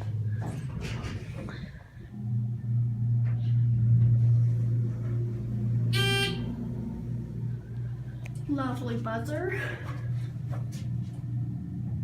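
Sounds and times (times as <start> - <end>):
elevator alarm buzzer: 5.8 - 6.9.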